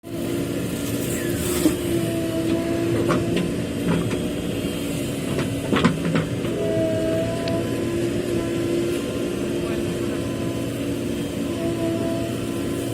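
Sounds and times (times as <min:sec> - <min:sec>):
diesel engine running: 0:00.0 - 0:12.9.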